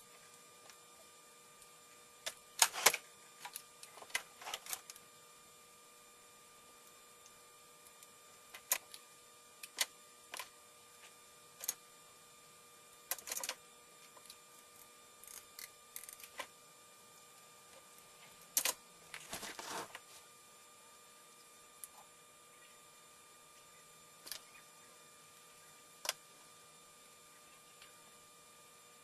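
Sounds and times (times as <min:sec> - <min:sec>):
small hard parts clicking: 0:15.2 - 0:16.4
short rustling scrape: 0:19.3 - 0:20.2.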